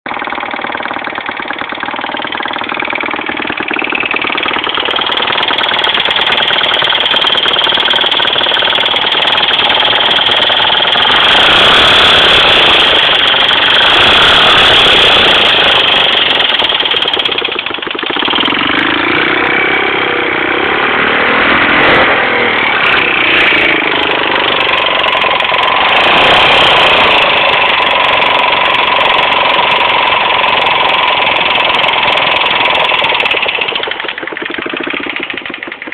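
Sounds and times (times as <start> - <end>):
motorcycle engine clattering: 0.0 - 35.9.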